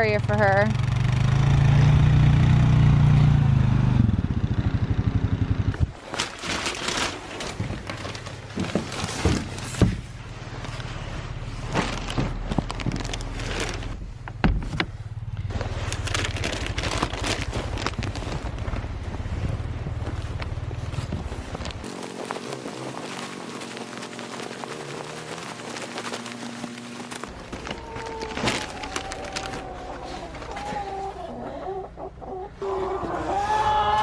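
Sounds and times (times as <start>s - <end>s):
atv engine running: 0.0s - 6.0s, 8.1s - 27.4s
crunching and scraping in snow: 5.8s - 14.2s, 14.8s - 31.0s.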